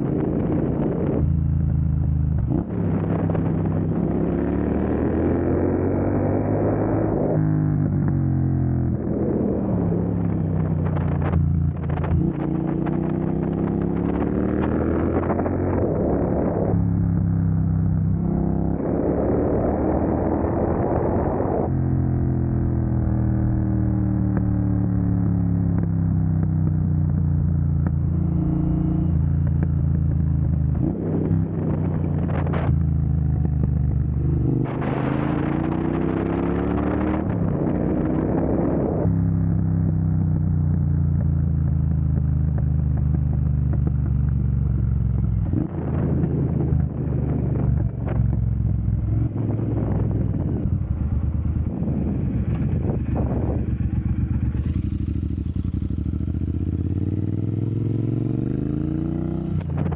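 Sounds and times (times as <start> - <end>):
motorcycle engine revving: 0.0 - 59.9
motorcycle engine idling: 52.3 - 57.0.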